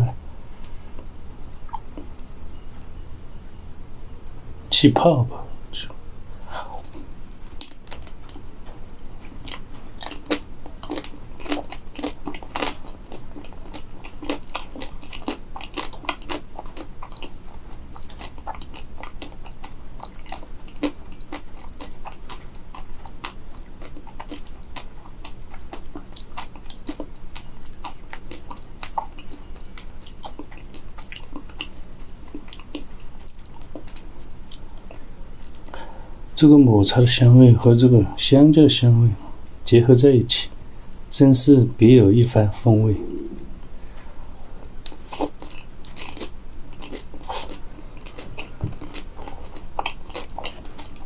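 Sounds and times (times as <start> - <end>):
crunching of frozen food: 9.3 - 31.7, 44.8 - 51.0.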